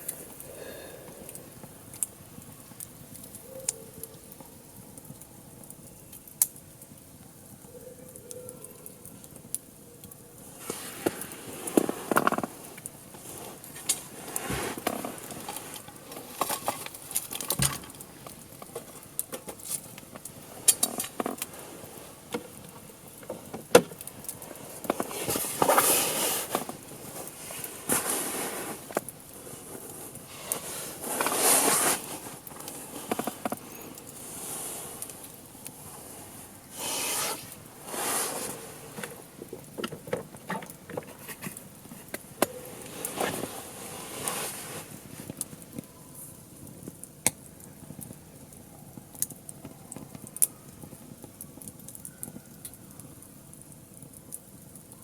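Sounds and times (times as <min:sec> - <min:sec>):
hiss of flames: 0:00.0 - 0:03.4, 0:10.4 - 0:46.9
wood fire crackling and popping: 0:00.0 - 0:55.0.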